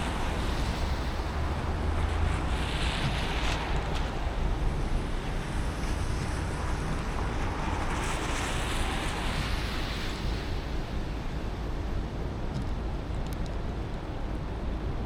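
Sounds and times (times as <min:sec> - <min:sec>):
tyres hissing on wet road: 0:00.0 - 0:11.9.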